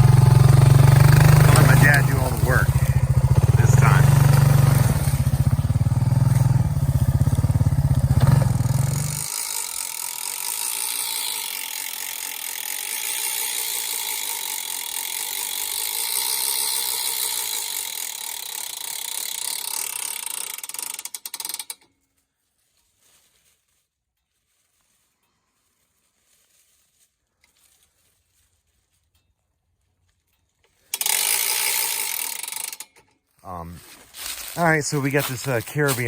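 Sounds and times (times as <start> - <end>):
quad bike engine running: 0.0 - 21.9, 30.9 - 32.9, 33.5 - 36.0.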